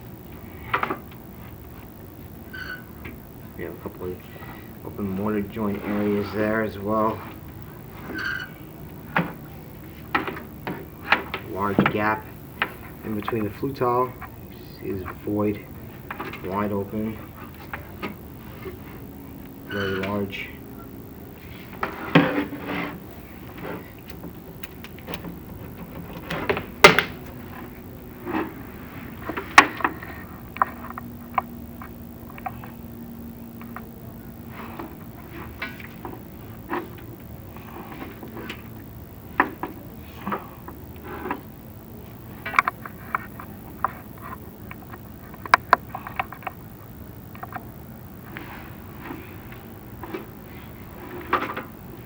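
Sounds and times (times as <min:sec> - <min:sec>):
steady low hum: 0:00.0 - 0:52.0.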